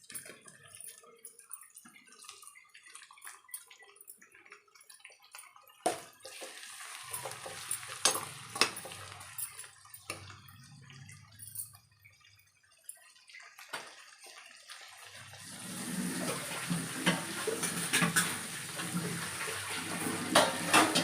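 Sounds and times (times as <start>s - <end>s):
onions frying in oil: 4.4s - 11.3s, 11.9s - 21.0s
loud sizzle: 6.0s - 11.1s, 13.1s - 21.0s
spatula clinking on metal: 6.9s - 10.6s.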